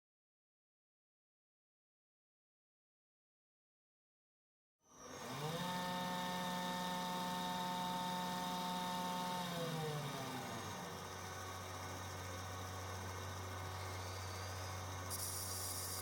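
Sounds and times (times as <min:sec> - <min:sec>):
grinding machine motor: 0:04.9 - 0:16.0.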